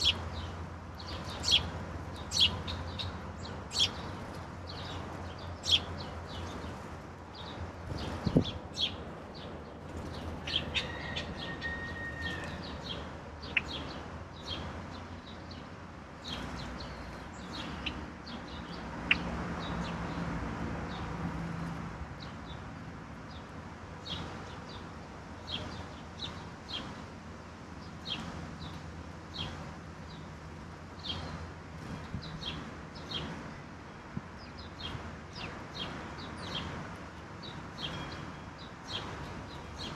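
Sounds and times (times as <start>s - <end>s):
songbirds chirping: 0.0s - 39.9s.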